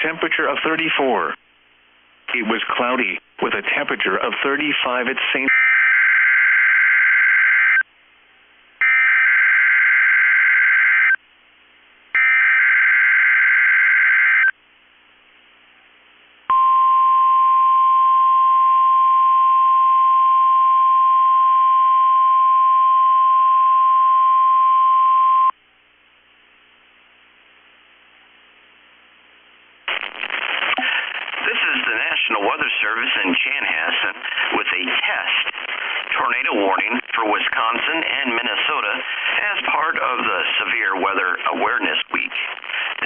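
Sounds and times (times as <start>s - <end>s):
warning alarm tone: 5.5s - 7.8s, 8.8s - 11.2s, 12.2s - 14.5s.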